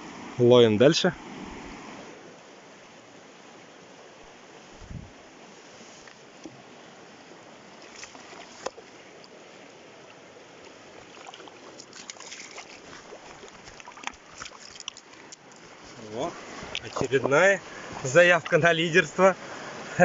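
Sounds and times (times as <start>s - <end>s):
river water running: 0.0s - 20.0s
small splashes and clicks: 7.8s - 9.4s, 10.0s - 15.8s, 16.7s - 17.4s.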